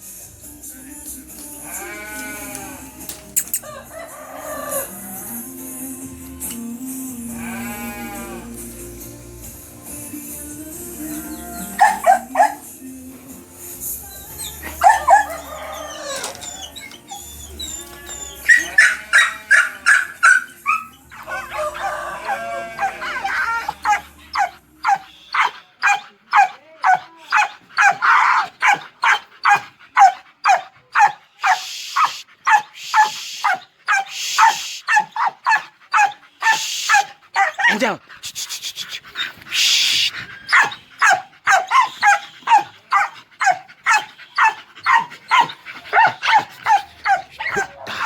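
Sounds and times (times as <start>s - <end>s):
background music: 0.0s - 31.7s, 32.5s - 48.0s
dogs whining and yelping: 11.2s - 12.7s, 13.8s - 38.2s, 39.0s - 48.0s
dogs barking: 11.2s - 12.8s, 14.0s - 38.0s, 39.1s - 48.0s.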